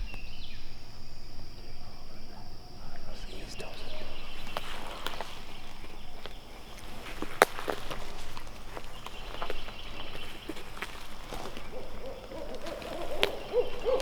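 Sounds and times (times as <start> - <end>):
insects chirring: 0.0 - 14.0
footsteps crunching dry leaves: 3.2 - 14.0
twig cracking: 3.6 - 14.0.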